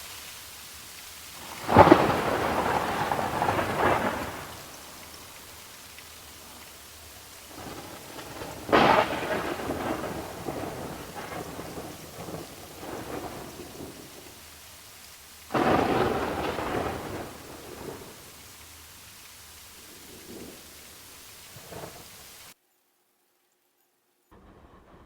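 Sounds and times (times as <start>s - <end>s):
steady rain: 0.0s - 23.6s
thunder claps rumbling: 1.4s - 14.5s, 15.5s - 18.6s, 19.8s - 22.4s, 24.4s - 25.0s.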